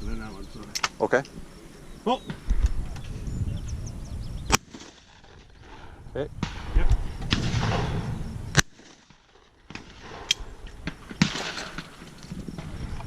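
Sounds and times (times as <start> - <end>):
shotgun shots: 4.5 - 5.5, 6.4 - 12.0.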